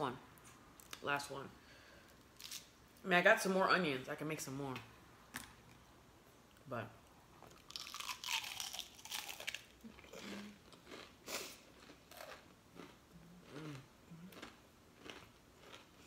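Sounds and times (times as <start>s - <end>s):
crunchy bite and chewing: 7.6s - 16.0s.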